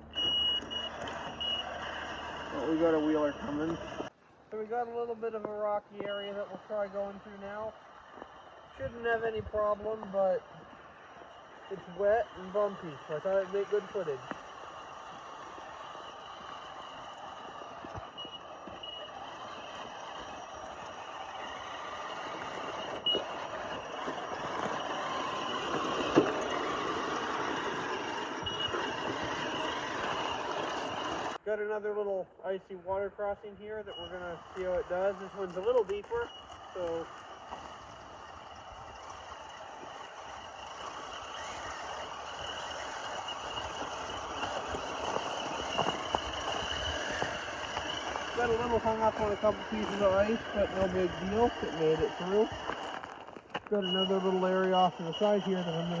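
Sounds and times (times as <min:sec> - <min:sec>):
toy truck motor running: 0:00.0 - 0:04.1, 0:06.2 - 0:31.4, 0:34.0 - 0:56.0.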